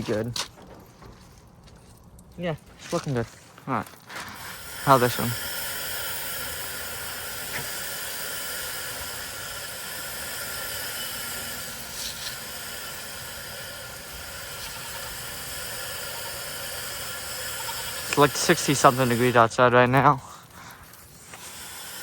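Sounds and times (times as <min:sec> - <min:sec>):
hose water spray hissing: 0:04.2 - 0:22.0.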